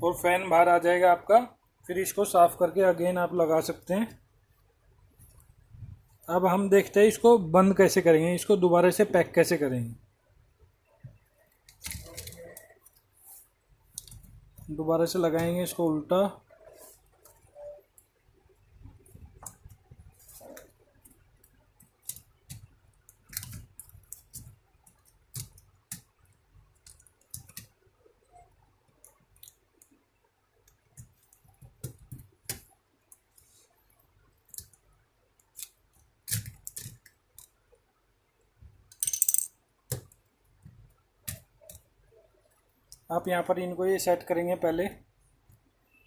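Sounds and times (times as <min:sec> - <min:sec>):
plastic parts clicking and knocking: 0:21.0 - 0:27.8, 0:30.7 - 0:33.4, 0:34.4 - 0:37.6, 0:38.6 - 0:41.9.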